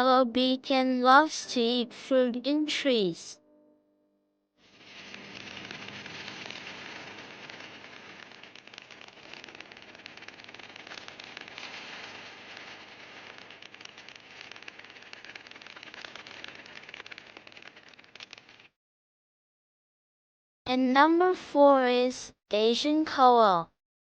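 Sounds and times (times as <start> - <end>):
dense crackling of fine clicks: 4.7 - 18.7.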